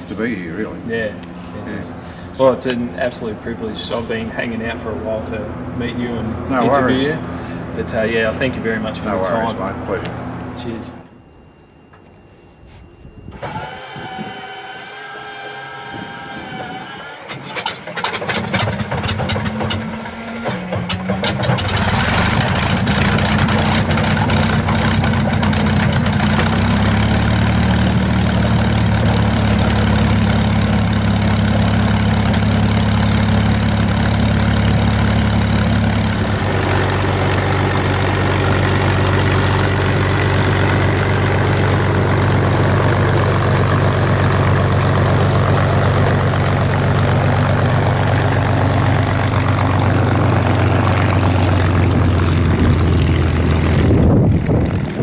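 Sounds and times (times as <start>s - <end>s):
aircraft engine starting: 0.0s - 11.0s, 13.1s - 55.0s.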